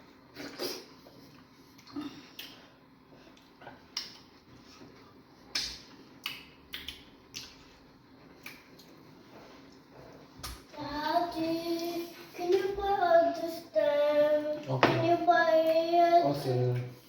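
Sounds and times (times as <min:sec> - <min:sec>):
mouth smacks chewing: 0:05.5 - 0:07.8.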